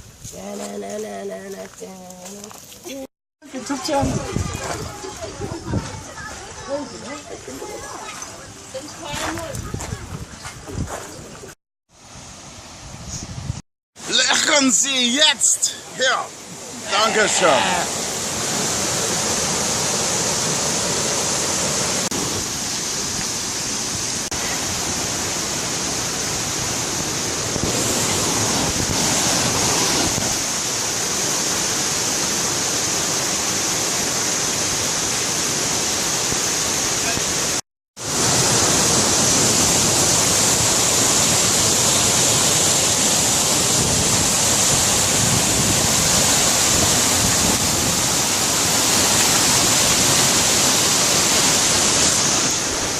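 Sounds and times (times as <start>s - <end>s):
waterfall rushing: 14.0s - 52.9s.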